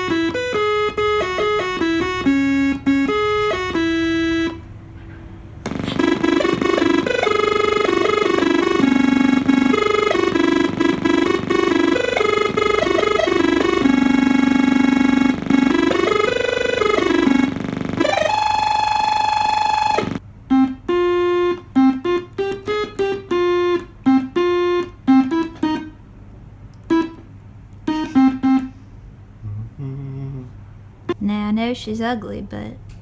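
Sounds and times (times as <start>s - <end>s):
synthesizer playing notes: 0.0s - 4.6s, 5.7s - 25.9s.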